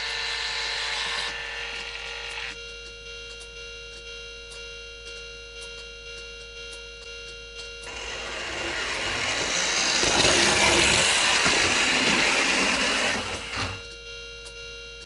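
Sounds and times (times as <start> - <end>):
level crossing warning bell: 1.8 - 15.0
model train rumbling on track: 7.9 - 13.8.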